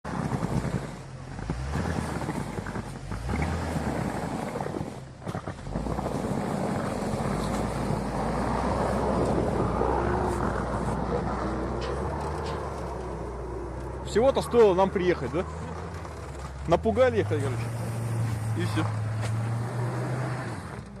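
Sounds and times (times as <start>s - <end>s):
vehicle engine driving in snow: 0.0s - 21.0s
wind on microphone: 0.1s - 13.8s.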